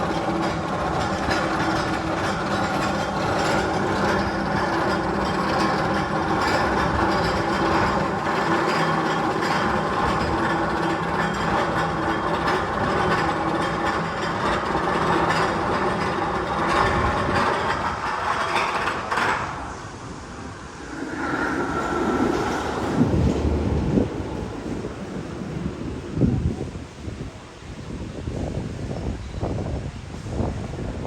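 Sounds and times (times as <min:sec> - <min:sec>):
roller coaster train clattering: 0:00.0 - 0:31.0
wind rumbling on microphone: 0:00.0 - 0:31.0
steady hum: 0:19.7 - 0:27.3.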